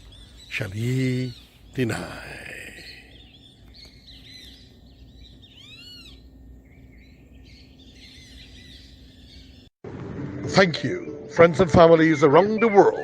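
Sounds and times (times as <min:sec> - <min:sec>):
loud arching bird call: 0:00.0 - 0:06.8
faint steady hum: 0:00.0 - 0:09.7
birds chirping: 0:00.0 - 0:09.8.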